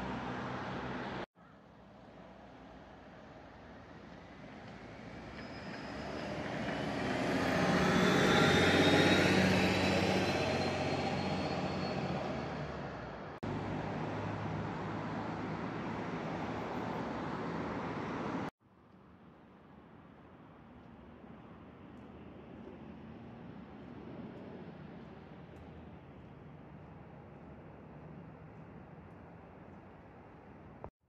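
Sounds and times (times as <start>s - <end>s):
steady traffic noise: 0.0s - 30.9s
vehicle passing with rising whine: 5.9s - 18.5s.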